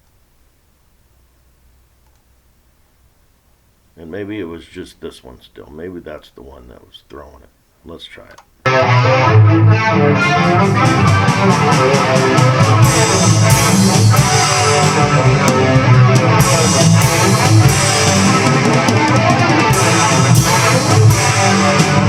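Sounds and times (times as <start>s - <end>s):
rock song with electric guitars: 8.7s - 22.0s.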